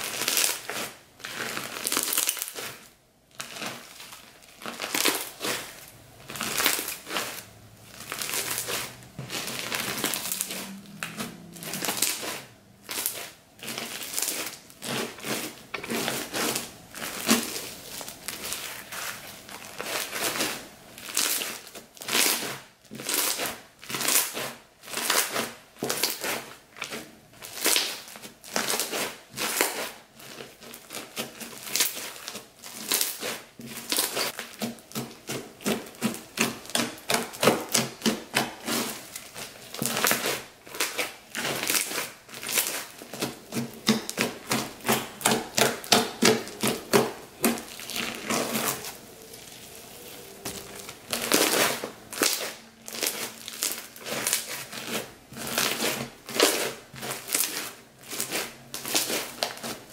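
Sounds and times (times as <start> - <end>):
crunchy slime being squeezed: 0.0 - 59.9.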